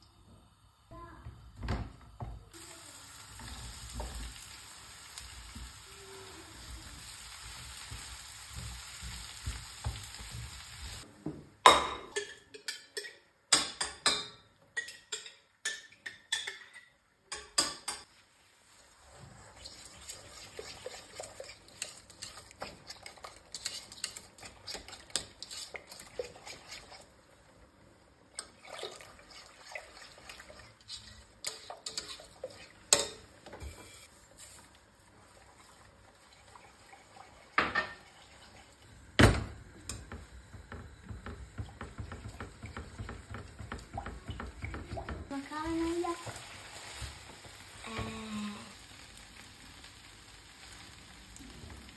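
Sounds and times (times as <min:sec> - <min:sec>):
food sizzling: 0:02.4 - 0:11.1, 0:17.4 - 0:51.9
utensils clinking against pots: 0:11.7 - 0:18.1.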